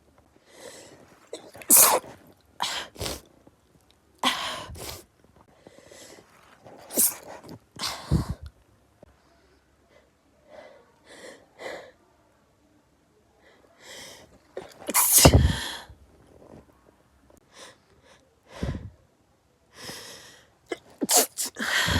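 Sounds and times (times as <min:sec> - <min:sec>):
person sneezing: 0:01.4 - 0:03.2, 0:06.8 - 0:08.3, 0:14.7 - 0:15.8, 0:20.8 - 0:21.9
breathy sounds: 0:15.2 - 0:15.9, 0:21.6 - 0:21.9.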